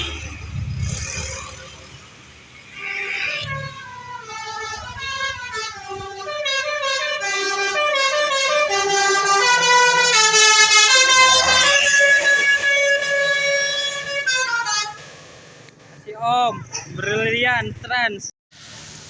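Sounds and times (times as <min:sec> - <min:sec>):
bus horn playing multi-tone tune: 0:00.0 - 0:00.4, 0:02.8 - 0:15.2.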